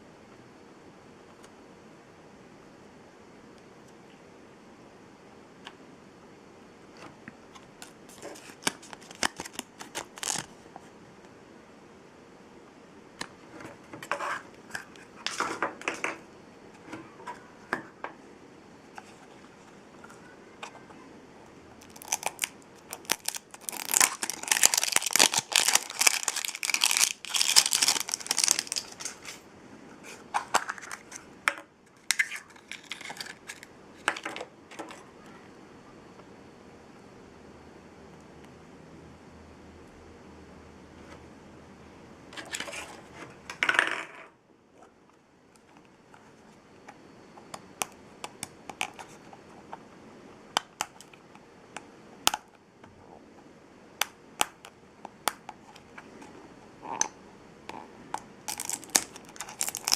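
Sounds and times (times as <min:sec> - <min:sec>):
plastic packaging crinkling: 0:07.8 - 0:10.5, 0:21.8 - 0:29.4, 0:32.1 - 0:33.7, 0:58.5 - 0:59.9.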